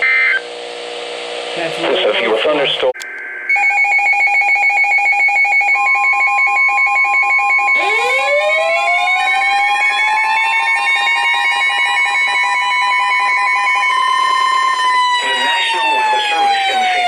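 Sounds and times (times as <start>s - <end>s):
siren winding up: 3.0s - 17.0s
steady high tone: 3.0s - 17.0s
two-pitch alarm beeping: 3.4s - 17.0s.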